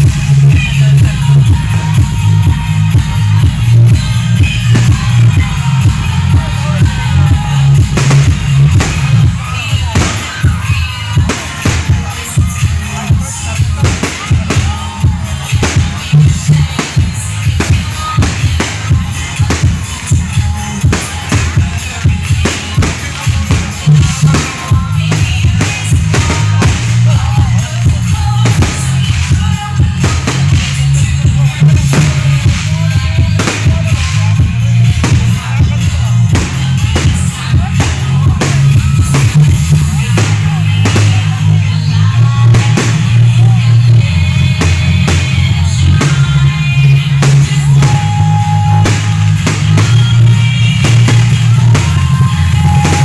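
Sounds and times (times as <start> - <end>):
heavy bass line: 0.0 - 53.0
loud music with drum beat: 0.0 - 53.0.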